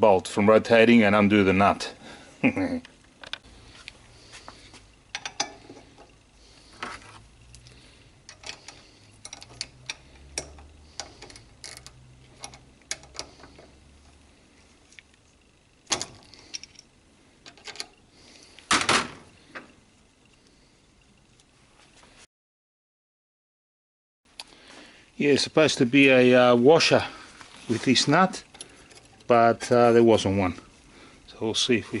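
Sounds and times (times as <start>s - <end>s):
metallic clicks of hand tools: 8.3s - 13.7s.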